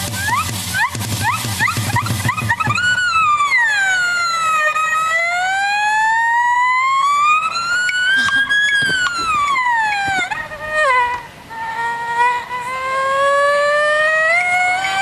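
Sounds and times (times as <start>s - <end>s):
wailing siren-like tone: 1.2s - 10.4s.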